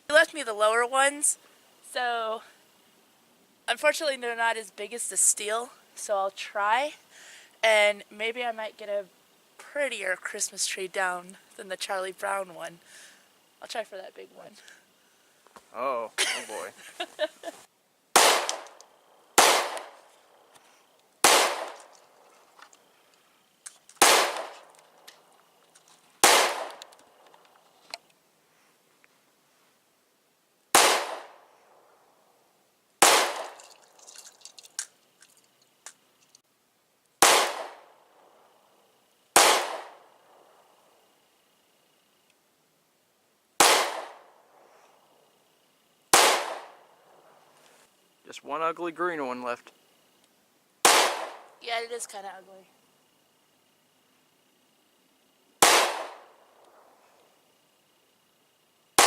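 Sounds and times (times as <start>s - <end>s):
pistol shots with echo: 18.2s - 18.8s, 19.4s - 20.0s, 21.2s - 21.8s, 24.0s - 24.6s, 26.2s - 26.8s, 30.8s - 31.4s, 33.0s - 33.6s, 37.2s - 37.8s, 39.4s - 40.0s, 43.6s - 44.2s, 46.2s - 46.8s, 50.8s - 51.4s, 55.6s - 56.2s.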